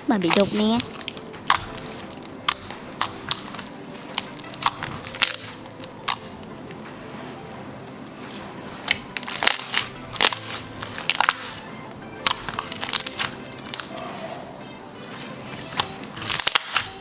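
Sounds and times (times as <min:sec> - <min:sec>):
air bubbles popping: 0:00.0 - 0:06.8
soft background music: 0:00.0 - 0:17.0
slime squeezed in hands: 0:00.3 - 0:06.5, 0:08.2 - 0:14.4, 0:15.0 - 0:17.0.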